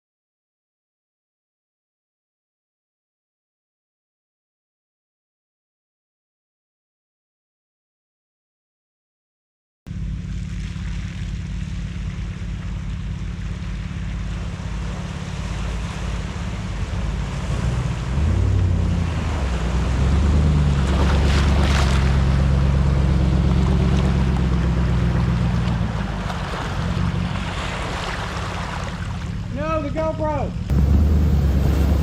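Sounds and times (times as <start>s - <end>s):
off-road vehicle engine running: 9.9s - 32.0s.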